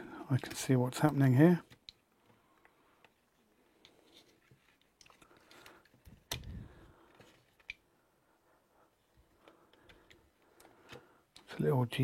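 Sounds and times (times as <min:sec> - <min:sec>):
plastic clicks: 0:03.8 - 0:07.9, 0:09.4 - 0:11.6.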